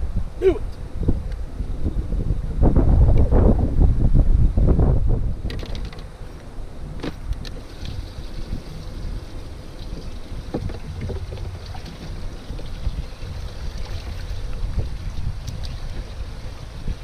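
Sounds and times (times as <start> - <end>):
wind rumbling on microphone: 0.0 - 17.0
water against boat hull: 7.0 - 17.0.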